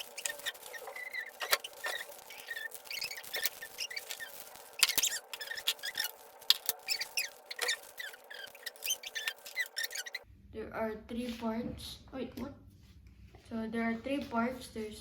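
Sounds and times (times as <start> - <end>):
plastic rubbing squeaks: 0.0 - 10.2
steady background hum: 0.0 - 15.0.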